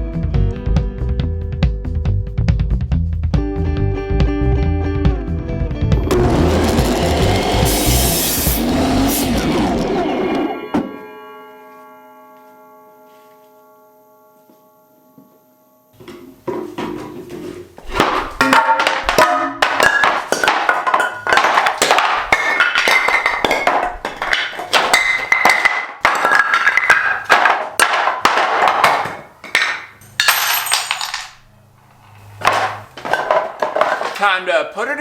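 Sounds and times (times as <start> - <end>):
upbeat music with percussive beat: 0.0 - 4.4.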